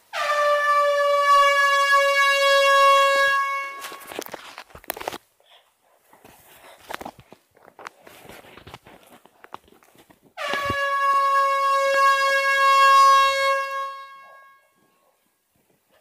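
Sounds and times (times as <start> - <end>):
air horn long blast: 0.0 - 4.2, 10.4 - 14.9.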